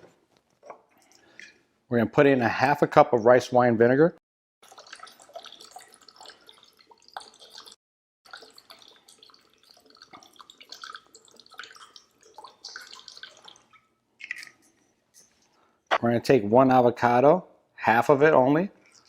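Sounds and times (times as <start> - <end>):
liquid pouring into a container: 4.6 - 15.8, 18.2 - 19.0.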